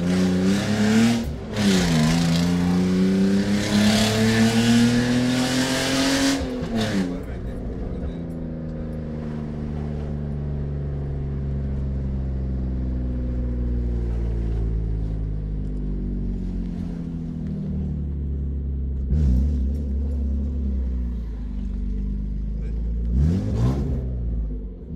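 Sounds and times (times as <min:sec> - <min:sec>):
car engine idling with open exhaust: 0:07.0 - 0:23.2.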